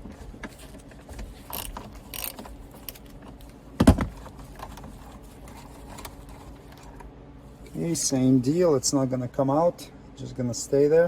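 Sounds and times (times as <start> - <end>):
hand ratchet clicking: 1.5 - 3.0
scraping rustles: 4.3 - 7.0.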